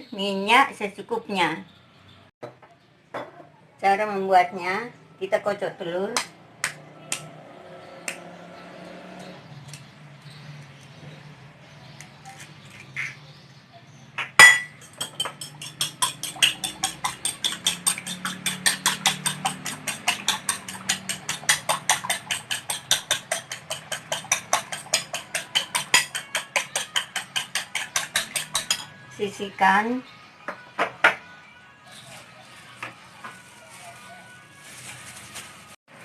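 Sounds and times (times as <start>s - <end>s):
utensil clinking against bowl: 14.2s - 29.0s.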